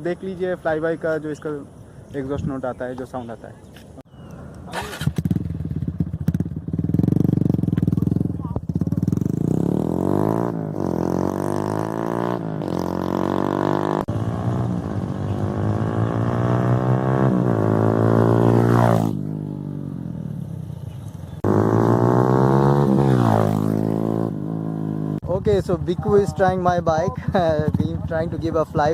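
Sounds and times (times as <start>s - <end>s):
motorcycle engine accelerating past: 4.7s - 25.2s.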